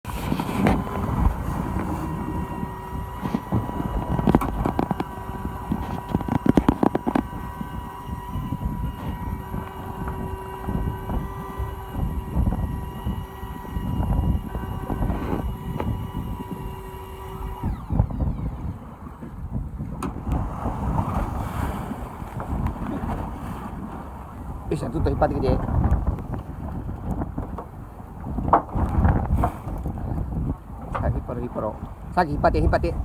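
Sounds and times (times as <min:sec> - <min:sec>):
boat engine running: 0:00.0 - 0:33.0
wind buffeting microphone: 0:00.0 - 0:33.0
sharp clicks and knocks: 0:03.2 - 0:07.4.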